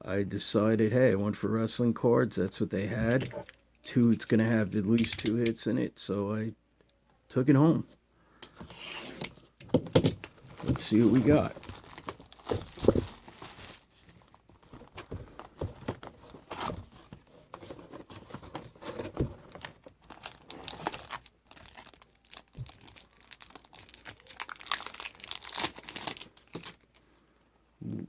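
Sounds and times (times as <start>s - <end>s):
wrapper crinkling and tearing: 10.1s - 15.5s, 19.4s - 27.0s.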